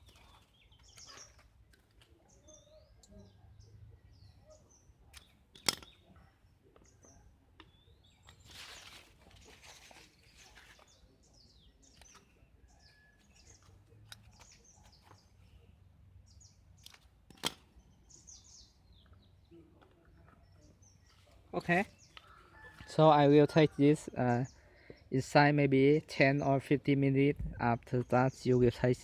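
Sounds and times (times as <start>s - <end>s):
small birds chirping: 0.0s - 29.0s
soft rustle: 8.3s - 11.3s.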